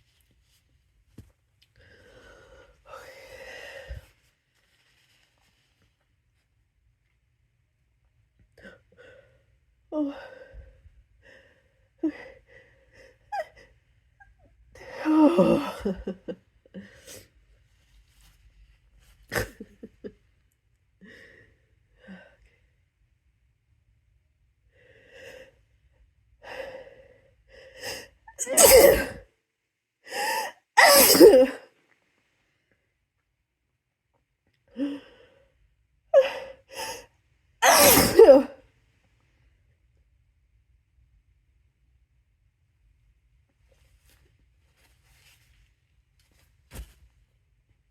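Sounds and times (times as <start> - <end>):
person sneezing: 28.4 - 29.2, 30.8 - 31.6, 37.6 - 38.6.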